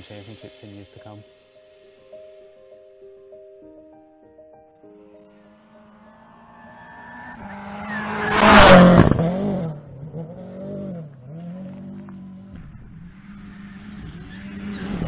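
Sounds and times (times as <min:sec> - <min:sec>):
rally car passing at speed: 0:05.2 - 0:15.0
engine revving: 0:05.4 - 0:15.0.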